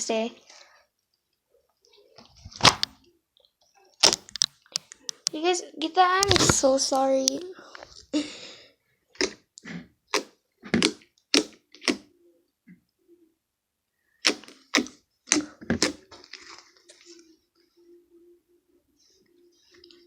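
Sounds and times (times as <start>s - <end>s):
air bubbles popping in slime: 10.1s - 12.1s
slime squeezed by hand: 14.2s - 16.4s.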